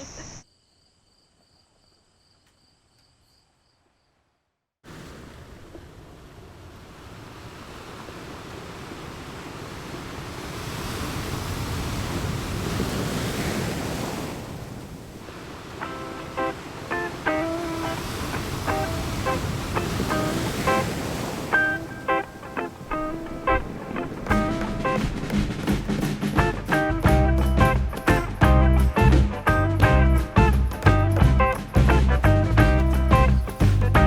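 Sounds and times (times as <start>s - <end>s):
faint high insect trilling: 0.0s - 4.1s
waves washing on beach: 4.8s - 26.4s.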